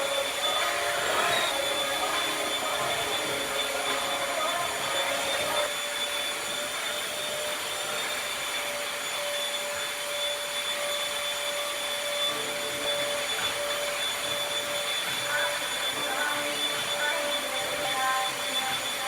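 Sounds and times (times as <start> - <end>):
vacuum cleaner running: 0.0 - 19.0.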